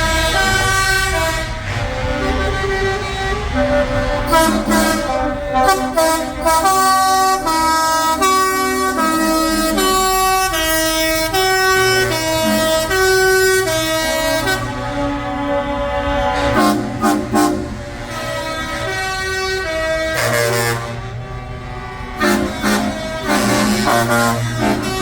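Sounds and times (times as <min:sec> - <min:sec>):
low vehicle rumble: 0:00.0 - 0:25.0
musical air horn tune: 0:00.0 - 0:25.0.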